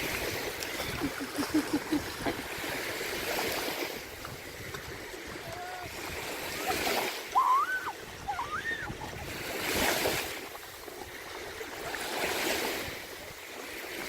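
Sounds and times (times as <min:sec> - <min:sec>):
lake waves washing ashore: 0:00.0 - 0:14.0
people shouting in water: 0:05.4 - 0:09.3.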